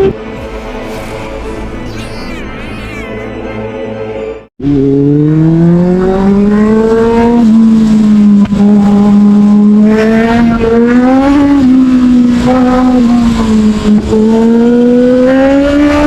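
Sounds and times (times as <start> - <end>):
motorcycle engine revving: 4.6 - 16.0.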